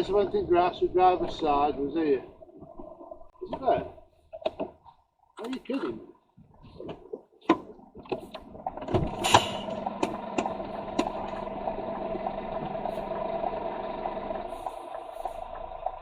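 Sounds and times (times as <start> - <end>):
diesel engine running: 8.4 - 16.0.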